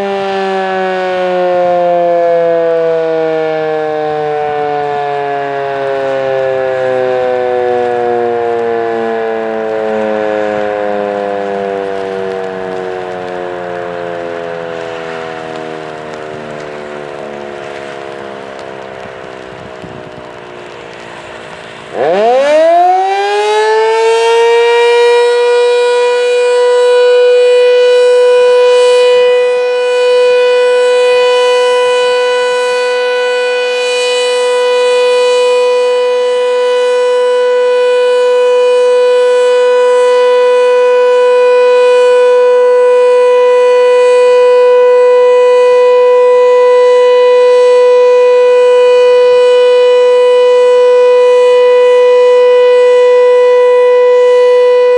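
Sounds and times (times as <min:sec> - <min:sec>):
warning siren winding up: 0:00.0 - 0:54.9.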